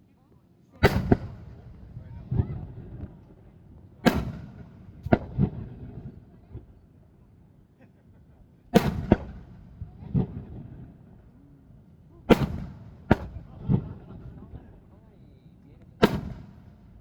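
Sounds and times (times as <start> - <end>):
firework shells booming: 0.8 - 6.9, 8.7 - 11.3, 12.2 - 14.9, 15.8 - 17.0.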